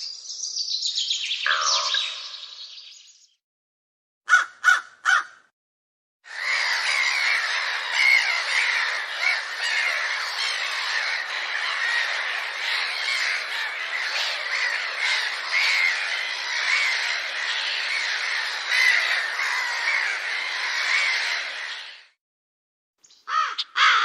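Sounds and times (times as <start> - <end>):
crow cawing: 1.5 - 2.0, 4.3 - 5.5, 6.3 - 22.1, 23.3 - 24.0
flock of crows cawing: 1.5 - 2.3, 4.3 - 5.5, 6.2 - 22.2, 23.3 - 24.0.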